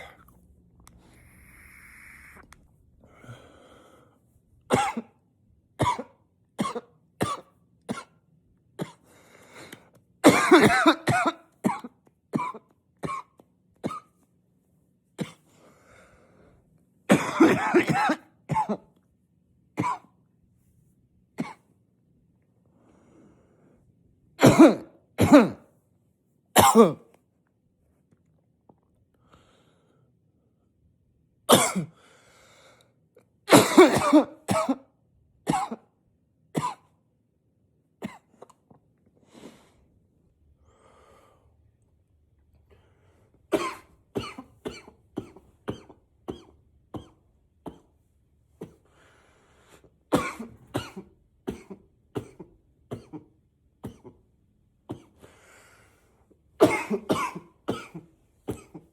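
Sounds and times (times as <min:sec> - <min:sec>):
man coughing into a pillow: 0:04.7 - 0:05.2, 0:05.8 - 0:08.1, 0:10.2 - 0:14.1, 0:17.1 - 0:18.9, 0:19.8 - 0:20.1, 0:24.4 - 0:25.7, 0:26.6 - 0:27.1, 0:31.5 - 0:31.9, 0:33.5 - 0:34.9, 0:35.5 - 0:35.9, 0:36.6 - 0:36.9, 0:43.5 - 0:48.0, 0:50.1 - 0:54.2, 0:56.6 - 0:58.9.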